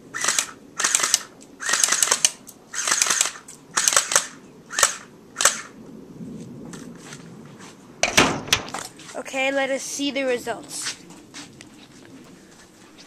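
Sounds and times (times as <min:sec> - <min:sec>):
airsoft gun firing bursts: 0:00.2 - 0:05.7.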